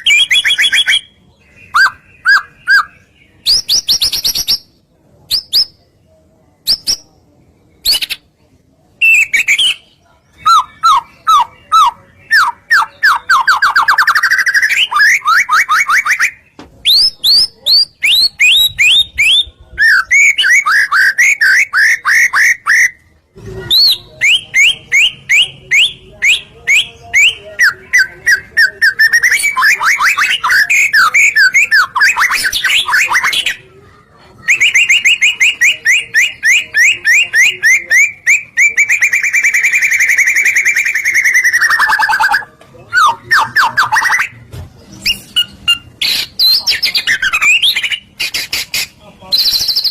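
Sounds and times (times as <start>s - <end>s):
songbird singing whistled trills: 9.0s - 23.0s, 23.7s - 33.6s, 34.4s - 44.4s, 49.4s - 49.9s.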